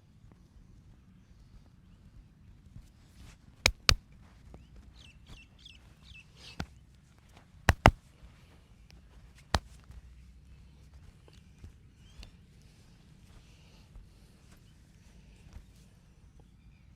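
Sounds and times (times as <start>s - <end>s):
hands slapping head: 3.7s - 4.0s, 7.7s - 8.0s.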